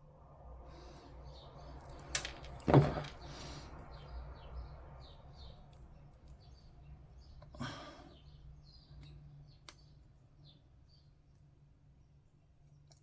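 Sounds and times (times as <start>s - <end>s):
plastic parts clicking: 2.0s - 3.2s.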